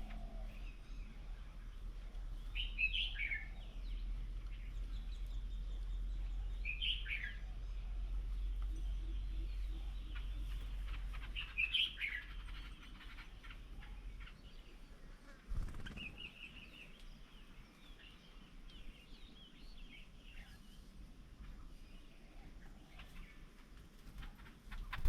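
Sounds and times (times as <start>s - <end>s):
steady low rumble: 0.0s - 14.6s
birds chirping: 0.0s - 25.0s.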